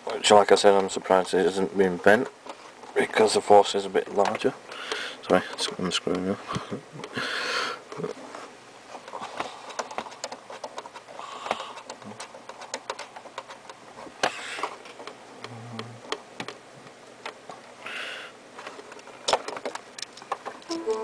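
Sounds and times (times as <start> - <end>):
cable connectors clicking: 18.6 - 21.0.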